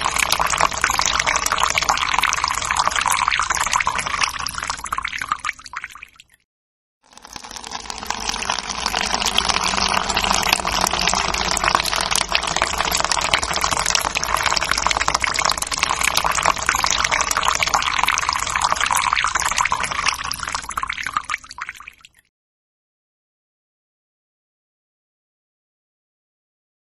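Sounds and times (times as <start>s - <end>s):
urine splashing into toilet water: 0.0s - 6.3s, 7.1s - 22.2s.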